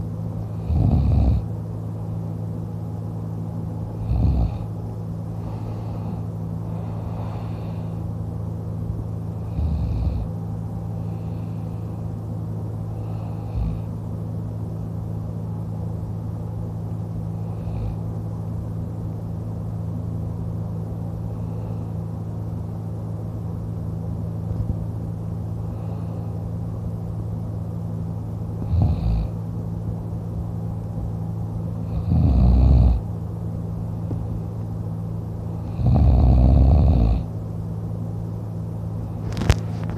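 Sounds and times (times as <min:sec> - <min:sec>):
steady low hum: 0:00.0 - 0:39.9
man snoring: 0:00.5 - 0:01.5, 0:04.0 - 0:04.7, 0:05.4 - 0:08.0, 0:09.3 - 0:10.4, 0:12.9 - 0:13.9, 0:17.3 - 0:18.0, 0:28.6 - 0:29.4, 0:31.8 - 0:33.1, 0:35.6 - 0:37.3.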